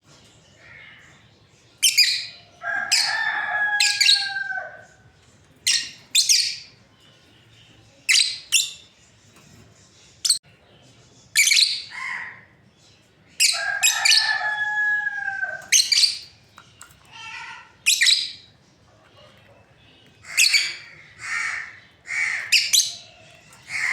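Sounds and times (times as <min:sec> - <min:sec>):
lovebirds chirping: 0:00.1 - 0:23.9.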